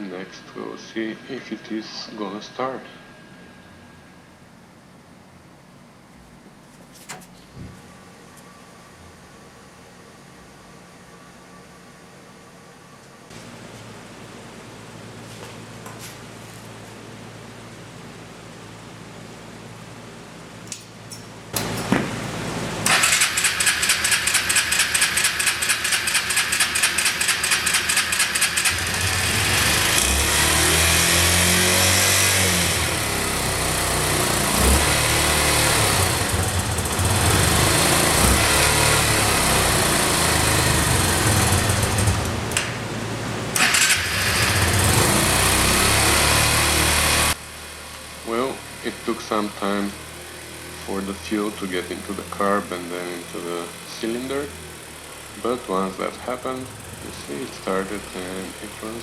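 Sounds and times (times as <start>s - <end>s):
motorcycle engine running unevenly: 21.6s - 43.0s
motorcycle engine cranking: 22.8s - 30.2s, 43.6s - 45.1s.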